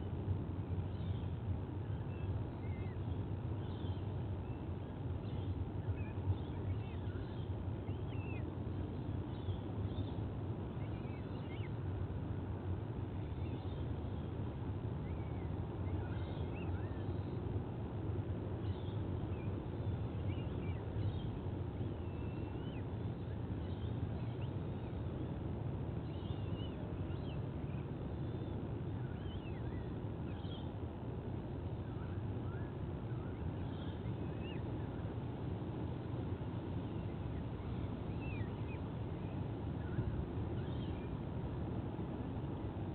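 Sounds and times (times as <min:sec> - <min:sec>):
low background rumble: 0:00.0 - 0:42.9.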